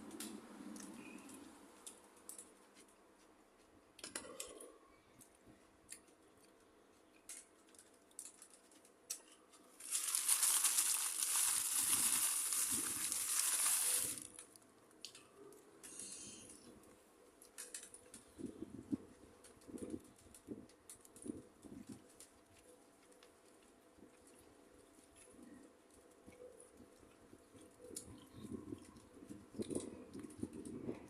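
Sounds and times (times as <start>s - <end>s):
loud crinkling rustle: 7.5s - 14.6s.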